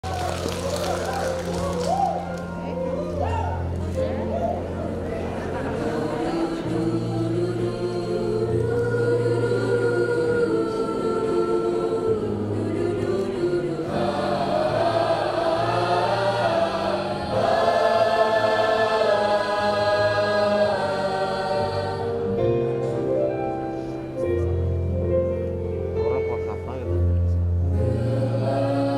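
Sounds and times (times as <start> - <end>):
steady low accompaniment: 0.0 - 28.9
choir singing held chords: 4.6 - 23.1, 27.7 - 28.9.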